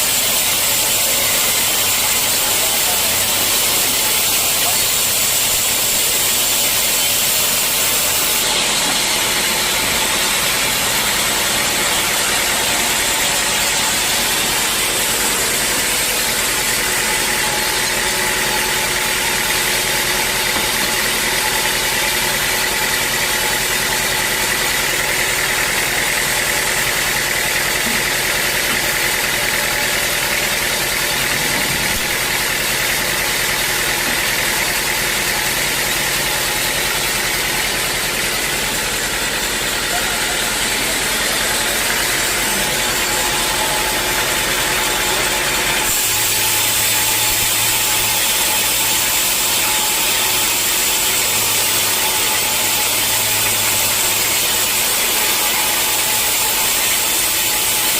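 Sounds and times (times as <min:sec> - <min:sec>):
sawmill machinery running: 0:00.0 - 0:57.9.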